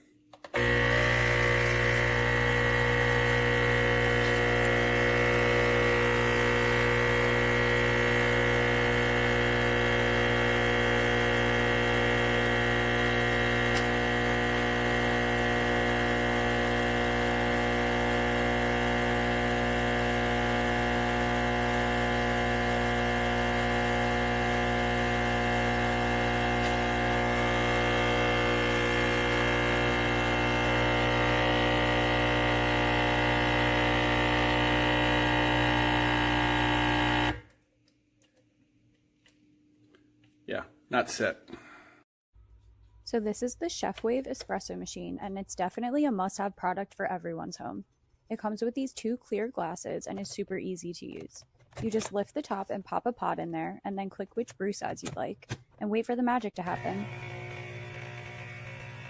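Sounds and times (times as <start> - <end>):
espresso machine pump buzzing: 0.4 - 37.5, 56.6 - 59.0.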